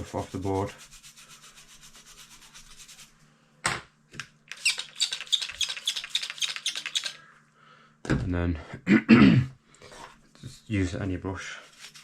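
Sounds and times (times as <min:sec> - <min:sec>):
brush scrubbing circuit board: 0:00.0 - 0:03.1, 0:11.6 - 0:12.0.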